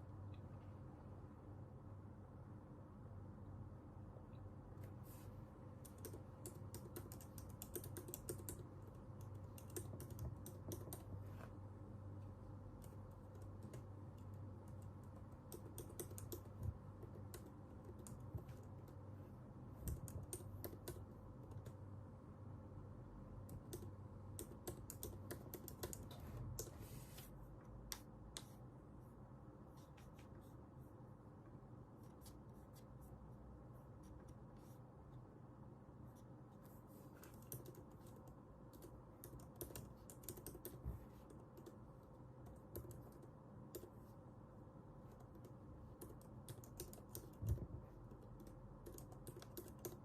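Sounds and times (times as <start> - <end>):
low steady hum: 0.0 - 50.0
keyboard typing: 5.8 - 11.3, 12.7 - 19.1, 19.7 - 21.9, 23.4 - 26.8, 37.1 - 44.1, 45.0 - 50.0.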